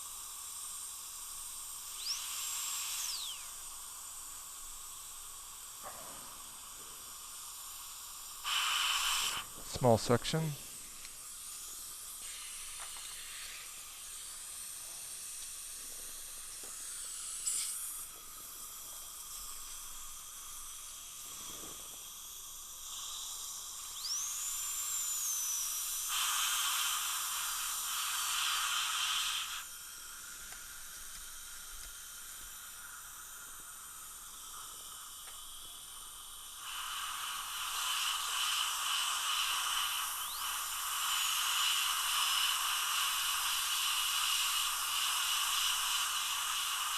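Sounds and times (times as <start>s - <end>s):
dental drill whine: 0.0s - 46.9s
steady hiss: 0.0s - 46.9s
drill cutting metal: 2.0s - 3.7s, 36.7s - 46.9s.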